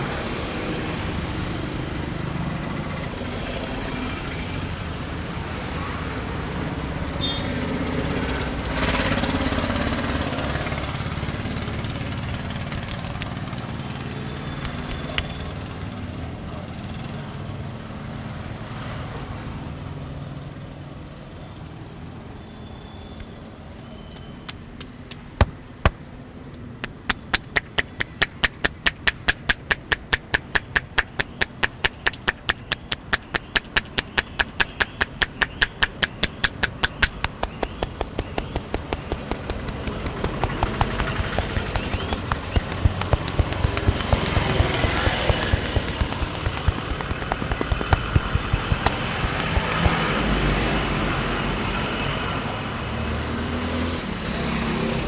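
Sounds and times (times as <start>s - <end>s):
road traffic noise: 0.0s - 16.4s, 23.1s - 55.0s
hand slaps of head massage: 12.7s - 13.4s, 14.7s - 15.4s, 24.2s - 26.1s, 26.8s - 50.1s.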